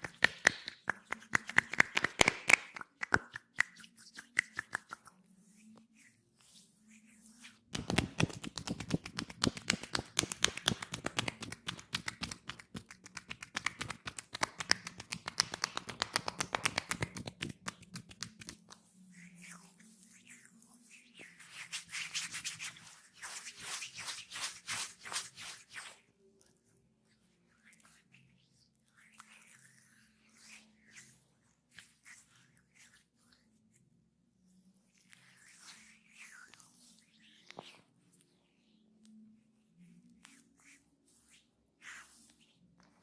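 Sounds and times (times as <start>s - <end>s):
hands slapping skin: 0.0s - 5.2s, 7.7s - 18.9s.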